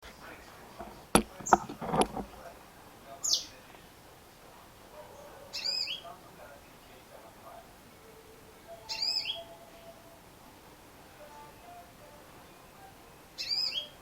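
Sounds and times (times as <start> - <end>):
bird calling: 0.7 - 14.0
loud knocks: 0.8 - 2.6.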